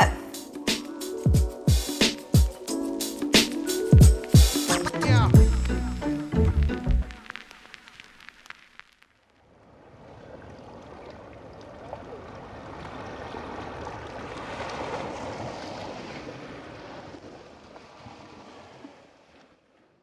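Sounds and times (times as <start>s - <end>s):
wind: 9.4s - 20.0s.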